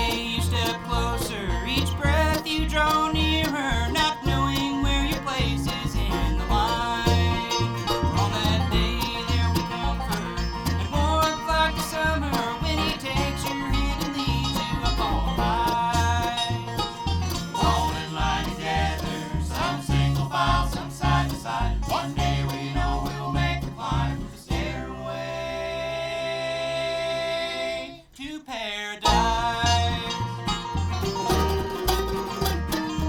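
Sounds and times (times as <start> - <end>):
bass pulse: 0.0 - 26.5, 29.1 - 33.0
banjo picking: 0.0 - 27.8, 29.0 - 33.0
bluegrass band playing: 0.0 - 27.8, 29.0 - 33.0.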